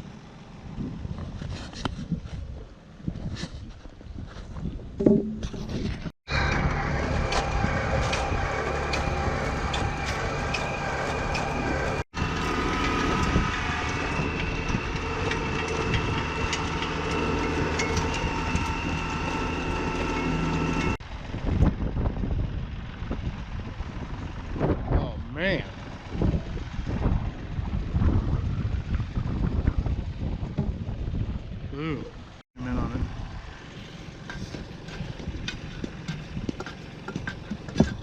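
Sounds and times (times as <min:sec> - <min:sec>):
motor engine running steadily: 0:00.0 - 0:03.4, 0:04.7 - 0:38.0
outdoor noise: 0:00.0 - 0:38.0
knocks: 0:05.0 - 0:05.4.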